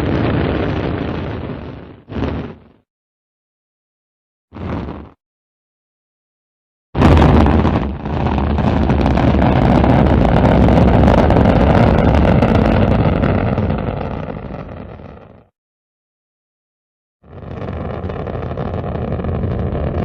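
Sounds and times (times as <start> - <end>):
rocket engines roaring: 7.0 - 15.2, 17.5 - 20.0.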